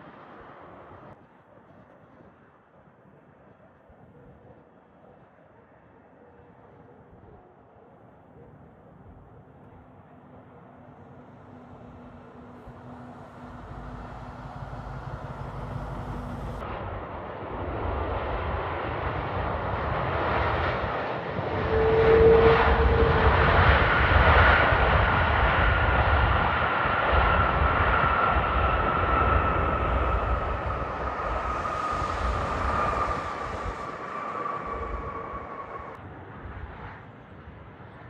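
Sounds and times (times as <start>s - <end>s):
airliner engine noise: 5.6s - 38.0s
high engine whine: 9.7s - 17.4s, 26.4s - 36.0s.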